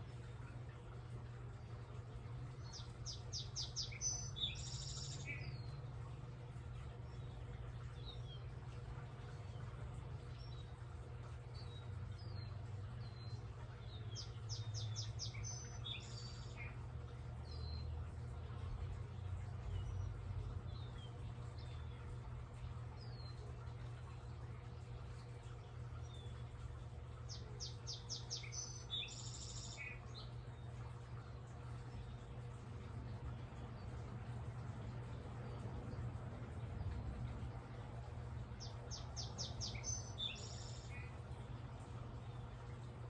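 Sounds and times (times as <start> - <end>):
steady low hum: 0.0 - 43.0
bird song phrase: 2.6 - 6.1, 11.5 - 26.5, 27.2 - 34.1, 38.4 - 42.9.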